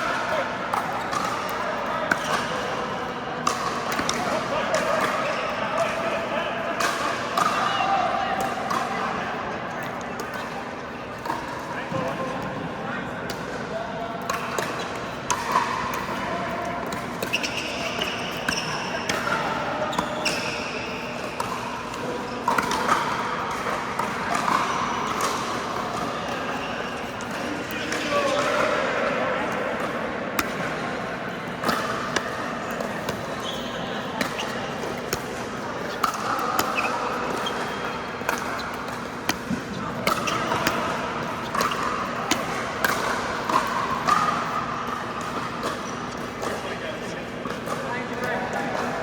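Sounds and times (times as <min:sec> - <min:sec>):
steady background noise: 0:00.0 - 0:49.0
ball bouncing on court: 0:14.3 - 0:28.7, 0:29.8 - 0:46.7
paddles hitting plastic ball: 0:34.3 - 0:44.4.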